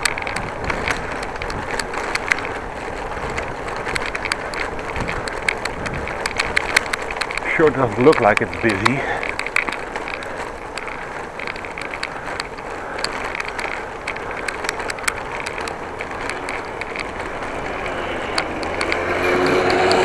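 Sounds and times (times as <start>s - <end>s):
car engine approaching: 0.0s - 10.2s, 13.5s - 20.0s
bicycle mechanism clicks: 0.0s - 20.0s
bicycle tyre and wind noise: 0.0s - 20.0s.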